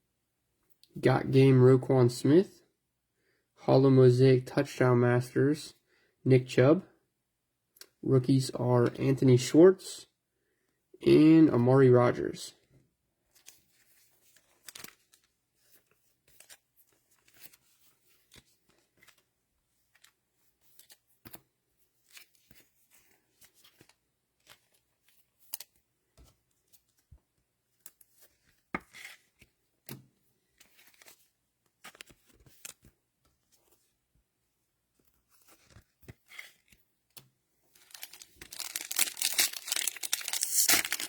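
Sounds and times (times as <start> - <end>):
cards clicking being handled: 37.8 - 41.0
cellophane wrapper tearing and crinkling: 37.8 - 41.0.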